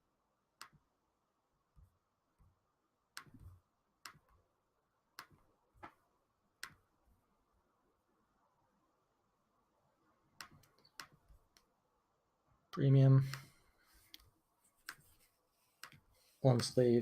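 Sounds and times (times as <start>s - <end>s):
computer mouse clicks: 10.4s - 11.7s, 13.2s - 15.1s, 15.8s - 16.8s.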